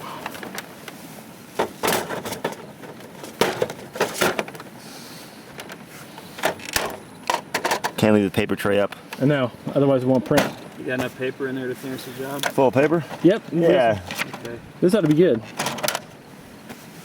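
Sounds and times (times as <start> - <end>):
plastic copier lid clatter: 1.6 - 4.6.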